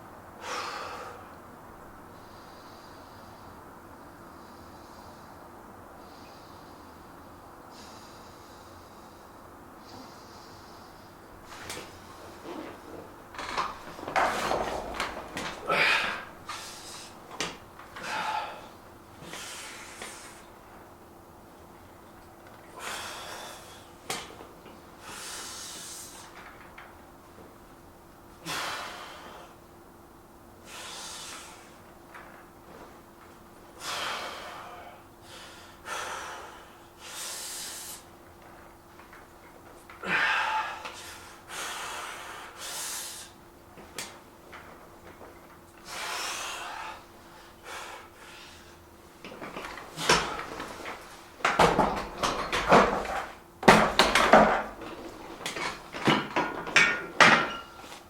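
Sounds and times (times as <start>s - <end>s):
man breathing hard: 0.4s - 1.4s, 2.1s - 12.4s, 15.4s - 17.2s, 17.9s - 20.5s, 22.8s - 24.0s, 25.0s - 26.4s, 28.4s - 29.7s, 30.6s - 31.8s, 33.8s - 38.1s, 40.0s - 43.4s, 45.8s - 48.9s, 49.9s - 50.7s
weights knocking and clattering: 12.4s - 16.4s, 49.2s - 58.0s
short forceful exhales: 18.0s - 20.5s, 28.4s - 29.6s, 30.7s - 31.8s, 33.8s - 38.1s, 45.8s - 48.8s.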